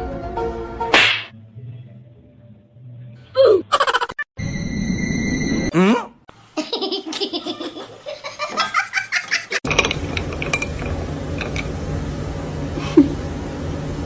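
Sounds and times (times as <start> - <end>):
person laughing: 3.4 - 4.2, 5.8 - 9.6, 12.8 - 13.2.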